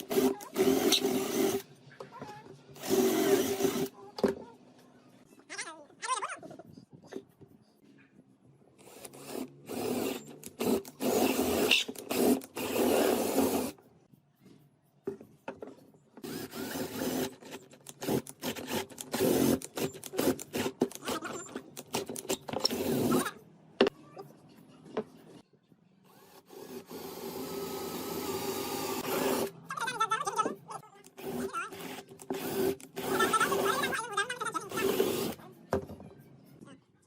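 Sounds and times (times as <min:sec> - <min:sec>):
woodworking tool cutting wood: 0:00.0 - 0:01.6, 0:02.8 - 0:03.9, 0:08.8 - 0:13.8, 0:16.2 - 0:23.4, 0:26.4 - 0:29.5, 0:31.1 - 0:34.0, 0:34.6 - 0:35.4.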